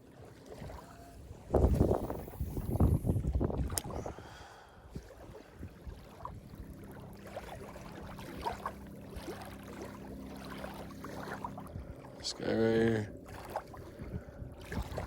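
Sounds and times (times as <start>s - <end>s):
wind and microphone handling: 0.6s - 6.6s, 13.3s - 15.0s.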